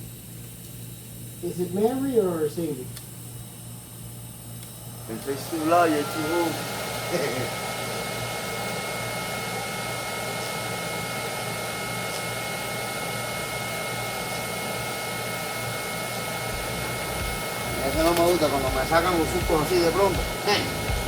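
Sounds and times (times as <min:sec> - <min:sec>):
motor-driven hiss: 0:00.0 - 0:21.0
high-pitched whines: 0:16.4 - 0:21.0.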